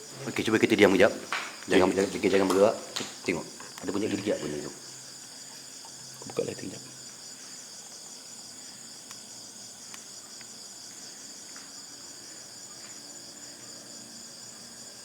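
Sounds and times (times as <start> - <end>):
crickets chirring: 0.0 - 15.0
faint ticks: 9.0 - 9.2, 9.8 - 10.6.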